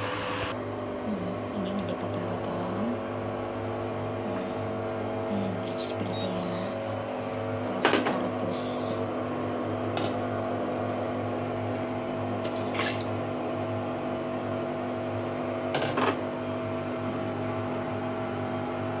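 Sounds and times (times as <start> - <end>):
washing machine humming: 0.0 - 19.0
water sloshing: 12.4 - 13.1.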